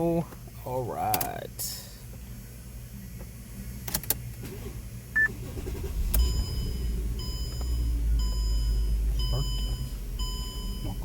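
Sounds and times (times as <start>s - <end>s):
car engine starting and running: 3.8s - 11.0s
dashboard warning chime: 6.2s - 11.0s
short beep: 6.2s - 11.0s.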